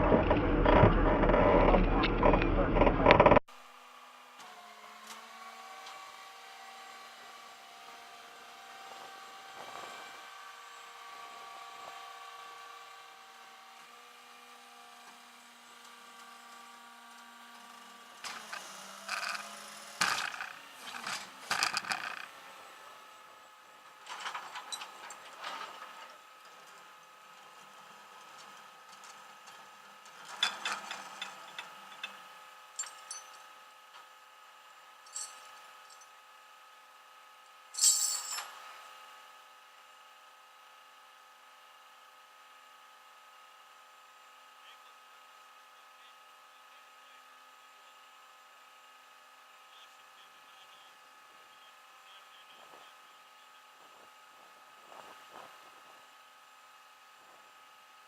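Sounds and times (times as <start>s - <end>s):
mechanical hum with whine: 0.0s - 58.0s.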